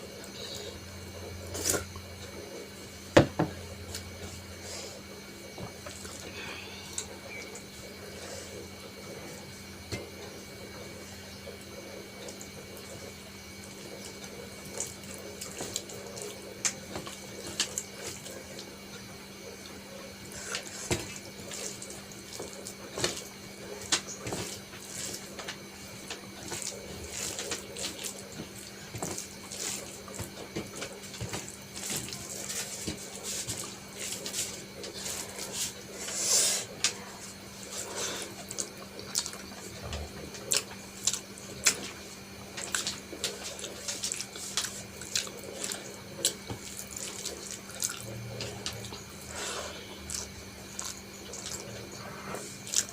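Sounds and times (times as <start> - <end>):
wet chewing: 38.3 - 39.7, 40.3 - 49.0, 50.0 - 52.9.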